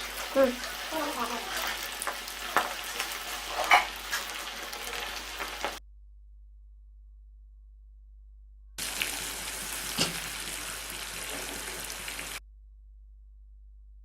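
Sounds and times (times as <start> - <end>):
food deep-frying in oil: 0.0 - 5.8, 8.8 - 12.4.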